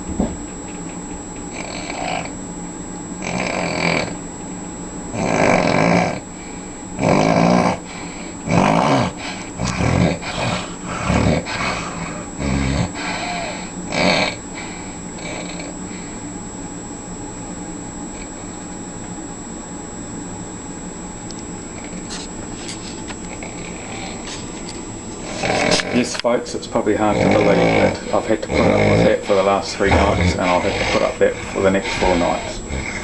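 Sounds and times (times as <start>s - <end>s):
steady mechanical hum: 0.0s - 33.0s
man snoring loudly: 1.5s - 2.4s, 3.2s - 4.2s, 5.1s - 6.3s, 7.0s - 15.8s, 23.3s - 24.3s, 25.2s - 26.2s, 26.8s - 33.0s.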